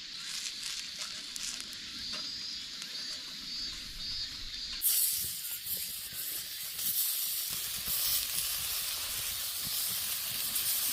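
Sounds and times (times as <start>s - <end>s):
sizzling on hot griddle: 4.8s - 10.9s.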